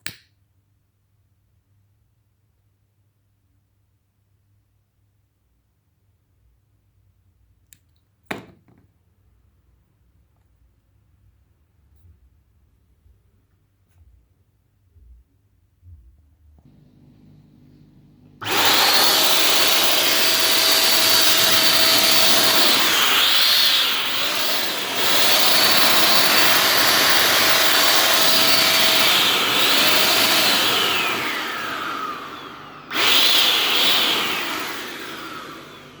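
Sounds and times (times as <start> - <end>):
vacuum cleaner motor whine: 16.6 - 36.0.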